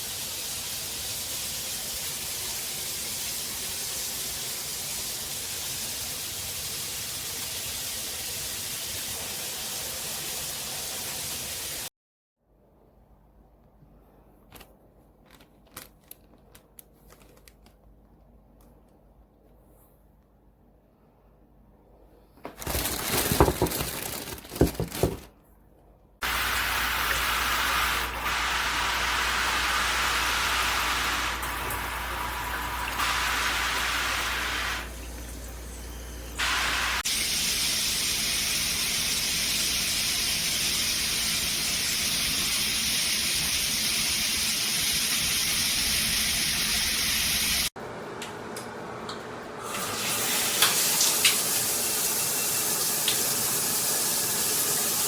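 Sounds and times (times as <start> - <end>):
water spraying from shower head: 0.0 - 11.9, 26.2 - 47.7.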